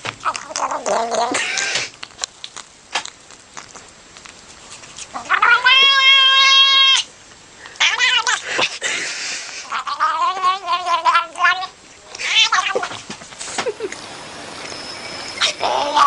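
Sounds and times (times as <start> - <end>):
cat meowing: 5.2 - 7.1, 7.8 - 8.4, 9.7 - 12.9, 15.2 - 16.0.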